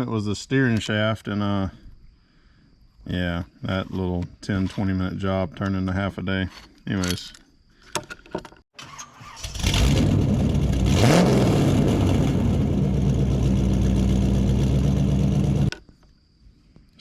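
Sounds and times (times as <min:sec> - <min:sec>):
car engine starting and idling: 0:08.8 - 0:15.7.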